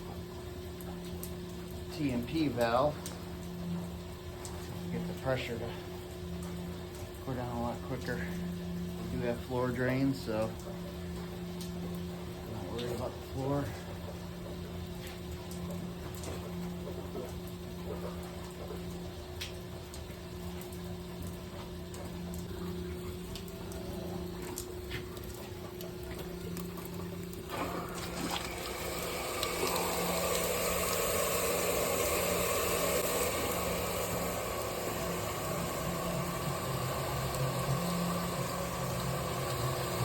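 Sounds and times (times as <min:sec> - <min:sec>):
boiler room equipment hum: 0:00.0 - 0:40.0
hot water hissing and spraying: 0:04.9 - 0:06.0, 0:12.5 - 0:14.0, 0:26.6 - 0:40.0.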